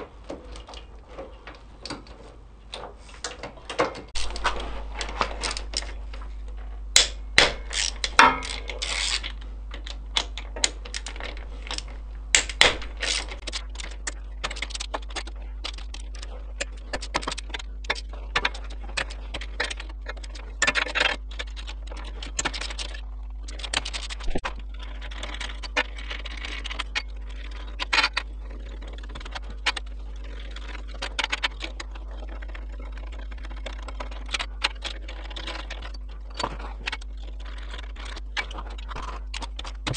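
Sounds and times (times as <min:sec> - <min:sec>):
steady low hum: 0:00.0 - 0:39.9
metal parts rattling: 0:07.4 - 0:09.9
tools and metal parts clinking: 0:07.5 - 0:09.3.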